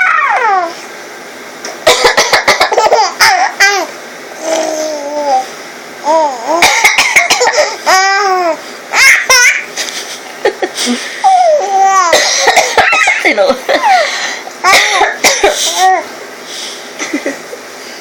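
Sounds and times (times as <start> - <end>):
adult coughing: 1.8 - 2.8, 6.6 - 7.8, 12.1 - 13.4, 14.6 - 15.8
baby giggling and squealing: 2.4 - 5.4, 6.1 - 9.7.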